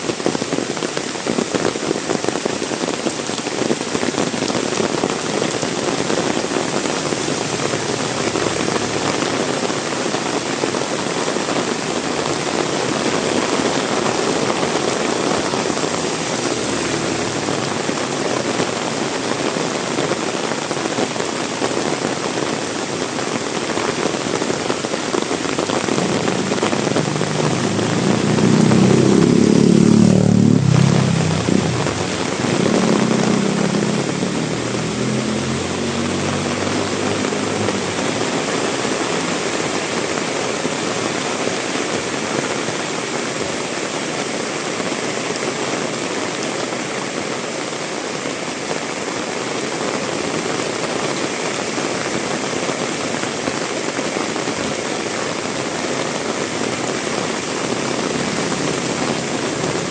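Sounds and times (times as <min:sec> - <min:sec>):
heavy rain falling: 0:00.0 - 0:59.9
vehicle engine passing: 0:06.2 - 0:10.2, 0:13.9 - 0:19.1, 0:25.8 - 0:41.2, 0:56.6 - 0:59.9.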